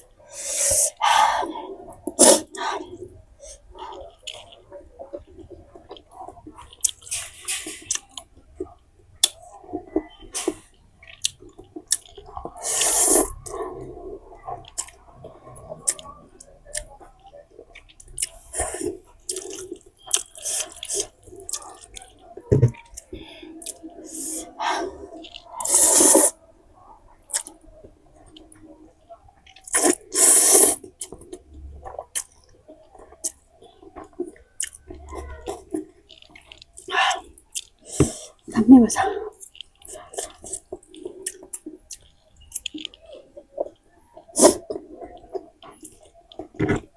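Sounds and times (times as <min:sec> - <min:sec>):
wet chewing: 0:00.9 - 0:26.4, 0:27.2 - 0:38.6, 0:39.2 - 0:46.9
noodle slurping: 0:11.9 - 0:13.6, 0:25.6 - 0:26.4, 0:29.7 - 0:31.1.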